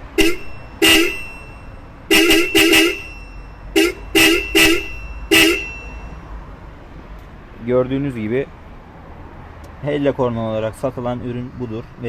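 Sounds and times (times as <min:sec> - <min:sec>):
car horn toots: 0:00.0 - 0:06.2.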